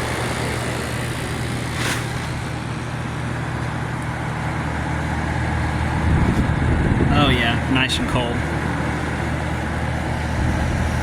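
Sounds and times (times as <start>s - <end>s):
air conditioner compressor humming: 0.0s - 11.0s
air conditioner fan rushing: 0.0s - 11.0s.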